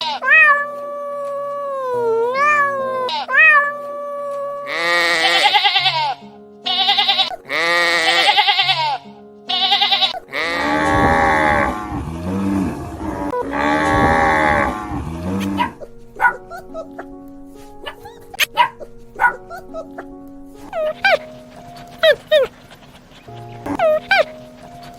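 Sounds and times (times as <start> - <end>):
animal bleating: 0.0 - 0.8, 2.3 - 4.0, 4.6 - 15.8
meow-like cries: 0.0 - 11.6
background music: 0.0 - 24.9.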